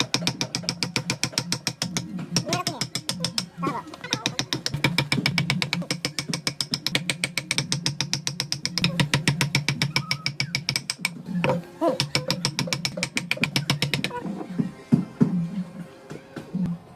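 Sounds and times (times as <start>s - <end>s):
steady motor hum: 8.8s - 16.9s.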